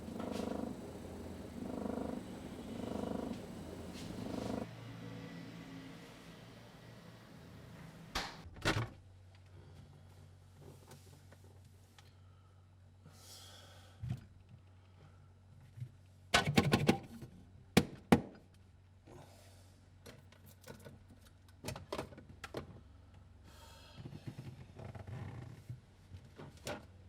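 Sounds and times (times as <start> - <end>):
steady low hum: 0.0 - 8.4.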